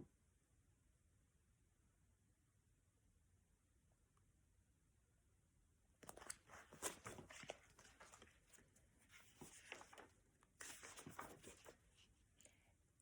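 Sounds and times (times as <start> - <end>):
paper rustling: 6.0 - 12.2.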